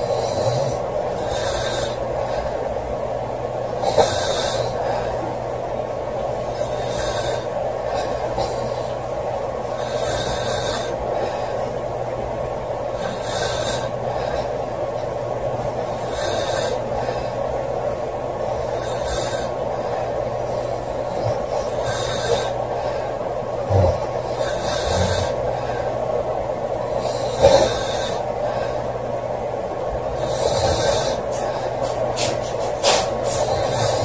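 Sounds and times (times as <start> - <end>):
girl snoring loudly: 0.0 - 2.0, 23.7 - 25.4, 30.2 - 31.3
steady background noise: 0.0 - 34.0.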